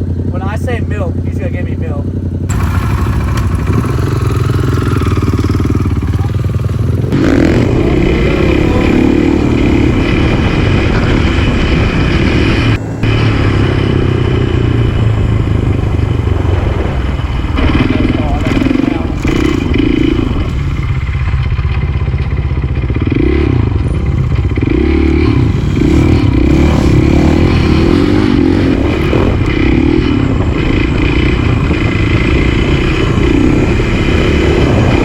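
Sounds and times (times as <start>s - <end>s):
motorcycle engine revving: 0.0s - 35.0s.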